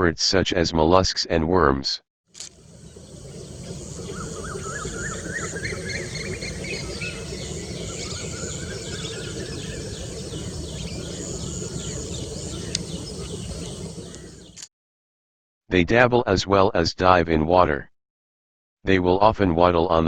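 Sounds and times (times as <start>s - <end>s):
birds chirping: 2.5s - 14.6s.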